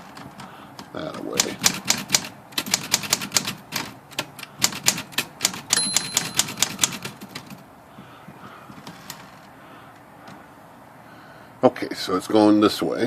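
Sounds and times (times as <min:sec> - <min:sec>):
typewriter key strikes: 0:01.6 - 0:07.6.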